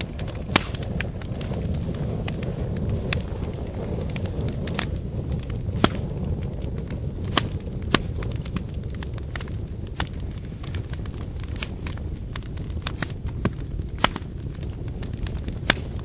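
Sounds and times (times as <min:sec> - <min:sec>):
crackles and pops of wood: 0:00.0 - 0:16.0
low rumble of flames: 0:00.0 - 0:16.0.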